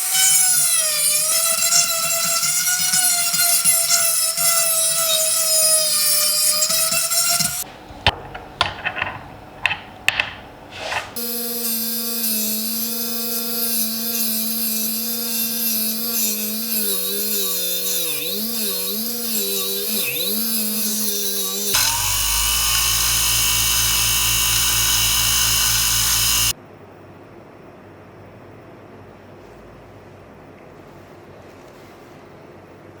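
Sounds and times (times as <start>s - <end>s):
power tool whining: 0.0s - 7.6s, 11.2s - 26.6s
knocks and handling sounds: 7.7s - 11.2s.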